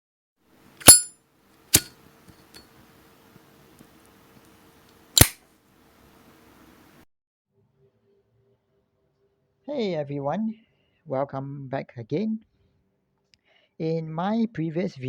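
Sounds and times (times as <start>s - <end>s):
lighter lid clicking: 0.8s - 1.1s, 1.8s - 2.6s, 5.2s - 5.4s.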